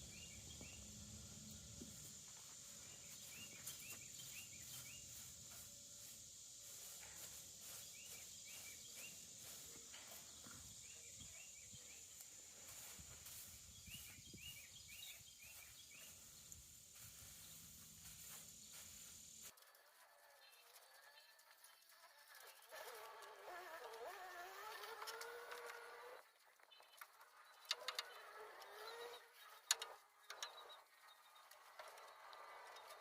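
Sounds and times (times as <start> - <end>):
quiet chirps: 0.0 - 19.5.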